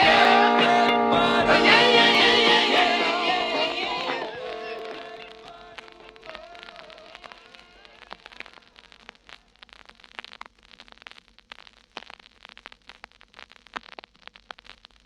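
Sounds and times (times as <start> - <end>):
song notes: 0.0 - 6.7
faint hiss: 0.0 - 15.0.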